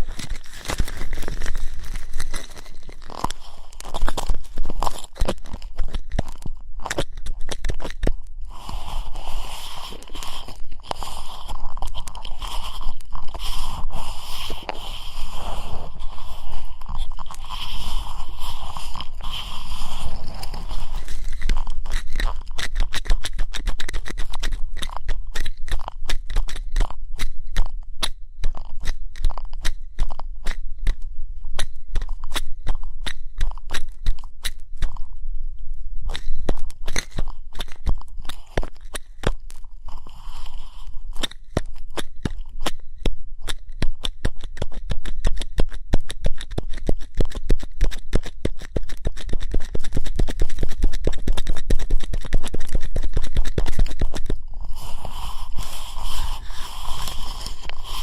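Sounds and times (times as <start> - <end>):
ear pick scraping microphone: 0.0 - 22.8, 36.5 - 42.2, 50.0 - 58.0.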